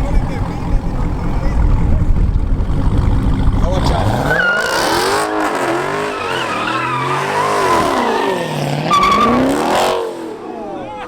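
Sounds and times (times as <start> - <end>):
car engine revving hard: 2.7 - 10.4
tyres squealing: 4.0 - 9.6.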